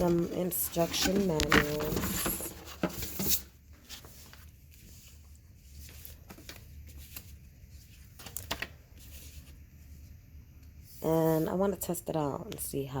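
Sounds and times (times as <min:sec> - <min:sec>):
paper rustling: 0:00.0 - 0:09.5
low steady hum: 0:00.0 - 0:13.0.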